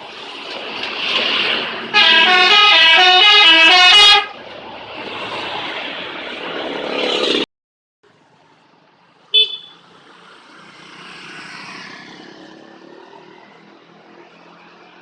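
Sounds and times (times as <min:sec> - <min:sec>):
passing vehicle: 0:00.0 - 0:07.5, 0:08.1 - 0:15.0
short sharp horn toot: 0:02.0 - 0:04.3, 0:09.4 - 0:09.8.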